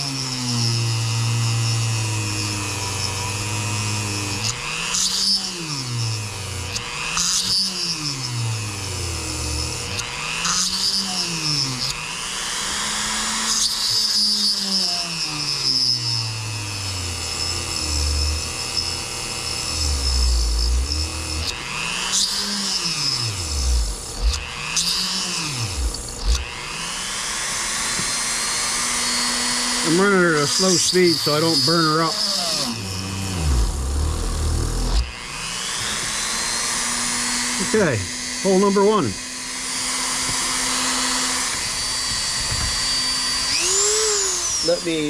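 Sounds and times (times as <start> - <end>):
small electric drill motor: 0.0 - 45.0.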